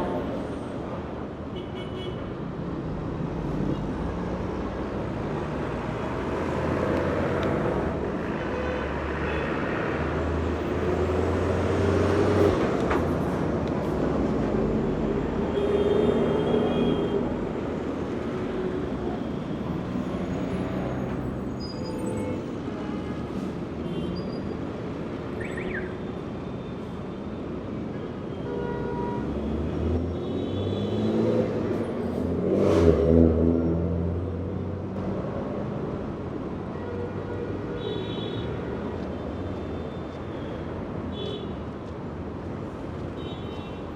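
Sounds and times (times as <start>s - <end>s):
vehicles passing: 2.4s - 28.3s, 29.0s - 37.6s.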